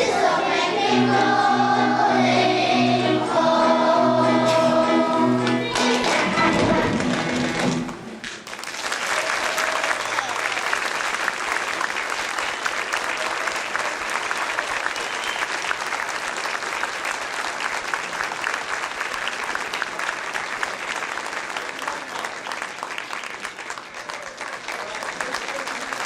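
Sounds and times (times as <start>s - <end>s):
audience applauding: 5.4s - 26.0s.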